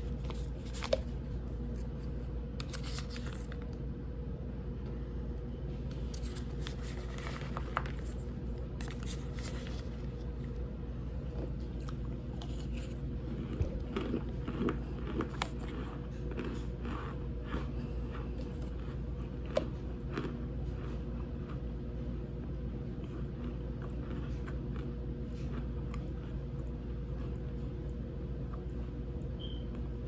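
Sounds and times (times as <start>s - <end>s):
squeaky crunchy chewing: 11.8s - 19.0s.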